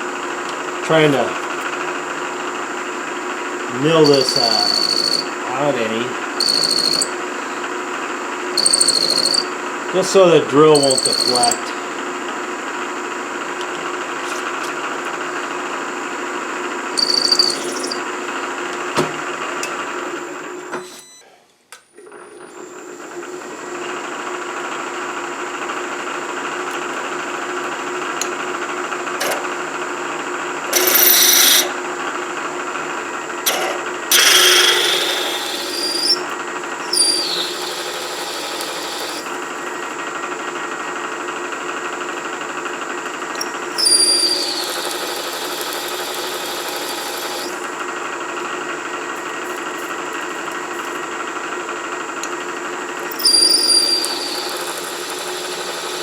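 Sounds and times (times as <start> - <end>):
milling machine spindle running: 3.6 - 7.5, 8.4 - 11.9, 16.6 - 18.4, 30.7 - 31.7, 33.5 - 40.0, 43.1 - 51.1, 52.7 - 56.0
end mill squealing into metal: 4.0 - 5.4, 6.4 - 7.2, 8.6 - 9.5, 10.6 - 11.8, 17.0 - 18.1, 33.5 - 39.8, 43.4 - 47.6, 53.0 - 56.0.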